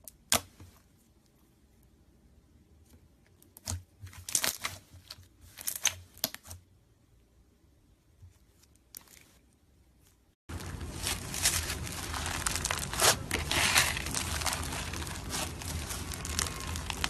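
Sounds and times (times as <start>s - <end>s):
slime squishing and crackling: 3.5s - 6.5s, 10.5s - 17.0s.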